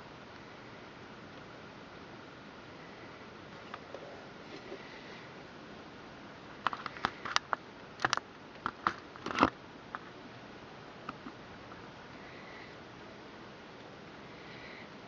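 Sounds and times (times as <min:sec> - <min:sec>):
computer hardware clicks and knocks: 0:06.7 - 0:09.5.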